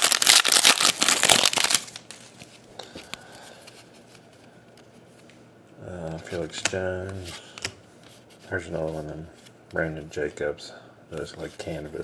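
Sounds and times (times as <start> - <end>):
card pack wrapper crinkling and tearing: 0.0 - 2.4.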